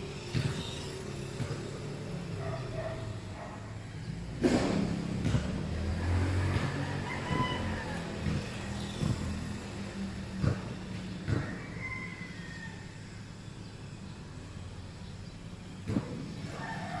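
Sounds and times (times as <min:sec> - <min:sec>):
toy motorcycle motor humming: 0:00.0 - 0:04.0.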